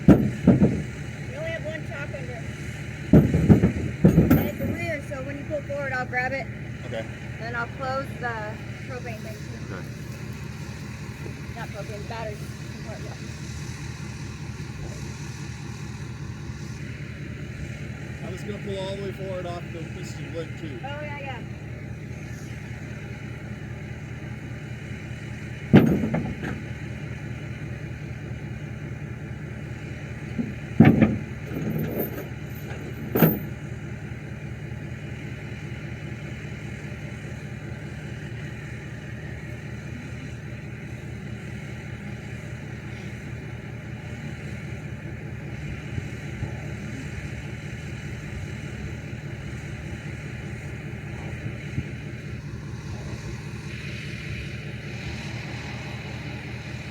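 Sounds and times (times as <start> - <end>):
sharp loud knocks: 0.0 - 1.0, 3.1 - 4.9, 25.7 - 26.7, 30.4 - 31.6
pickup truck engine running: 0.0 - 56.9.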